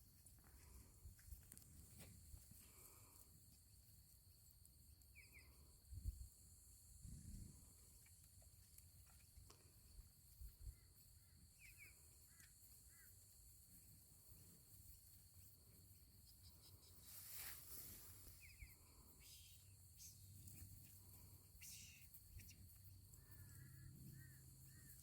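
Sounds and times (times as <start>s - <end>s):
insects droning: 0.0s - 25.0s
bird chirps: 11.5s - 13.1s, 18.3s - 25.0s.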